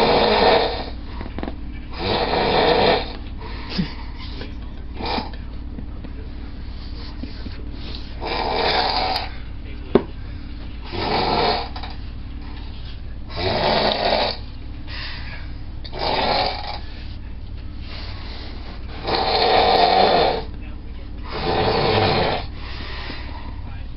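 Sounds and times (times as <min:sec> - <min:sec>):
person snoring: 0:00.0 - 0:01.0, 0:01.9 - 0:03.9, 0:08.1 - 0:09.3, 0:10.9 - 0:11.9, 0:13.3 - 0:14.4, 0:15.9 - 0:16.9, 0:17.9 - 0:20.5, 0:21.2 - 0:23.5.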